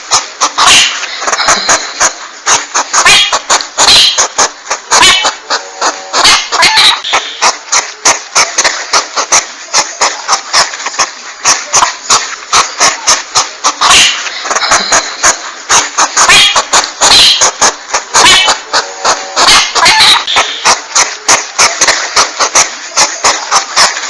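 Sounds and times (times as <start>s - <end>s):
porcupine squeaky calls: 0.4s - 7.6s, 11.4s - 21.8s.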